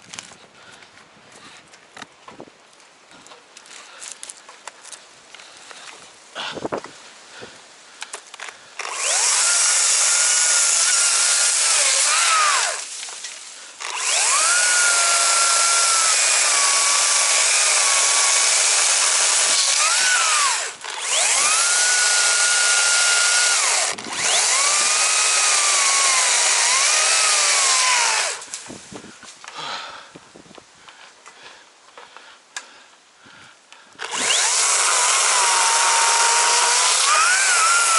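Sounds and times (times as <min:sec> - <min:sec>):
chainsaw cutting tree trunk: 0:08.1 - 0:28.6, 0:34.0 - 0:37.9.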